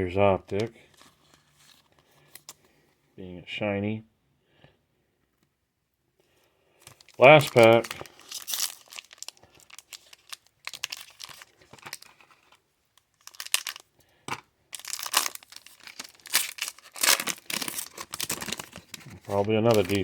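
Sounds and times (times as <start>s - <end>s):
wrapper tearing and crinkling: 6.8s - 13.9s, 14.7s - 20.0s.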